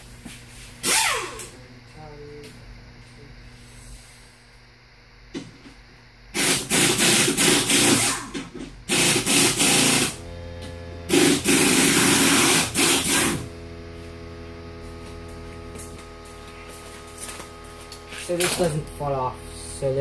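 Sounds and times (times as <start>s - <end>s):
air compressor motor hum: 0.0s - 20.0s
pneumatic impact hammer bursts: 0.8s - 1.5s, 6.3s - 10.2s, 11.1s - 13.5s.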